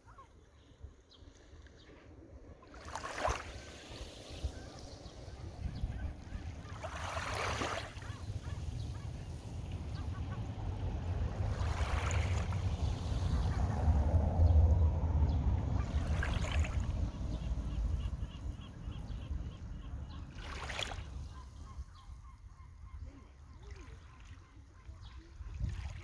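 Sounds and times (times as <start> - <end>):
small waves washing in: 1.2 - 21.7.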